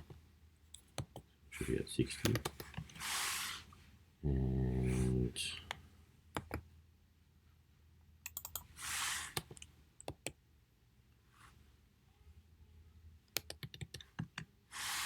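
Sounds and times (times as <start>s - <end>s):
keyboard and mouse clicks: 0.7s - 1.3s, 2.2s - 3.0s, 5.7s - 6.7s, 8.2s - 8.7s, 9.3s - 10.4s, 13.3s - 14.5s.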